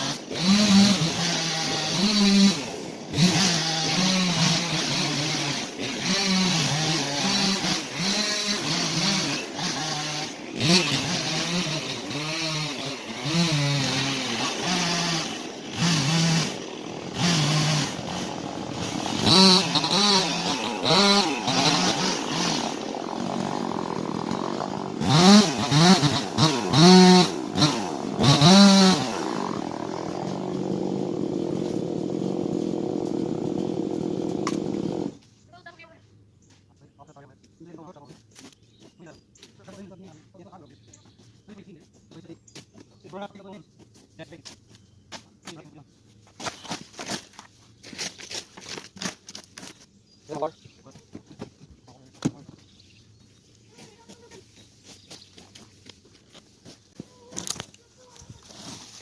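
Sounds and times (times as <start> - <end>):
chainsaw revving: 0.0 - 35.2.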